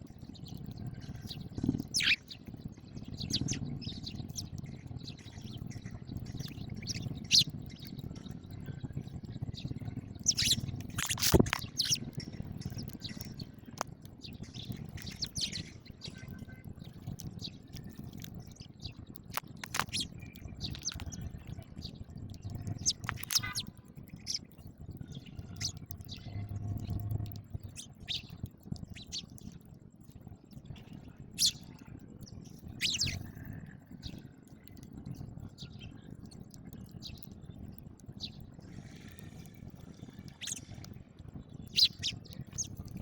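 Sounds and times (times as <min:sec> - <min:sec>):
sparrows chirping: 0:00.1 - 0:29.6, 0:30.8 - 0:34.9, 0:35.5 - 0:41.0, 0:41.6 - 0:43.0
low steady hum: 0:19.6 - 0:29.5.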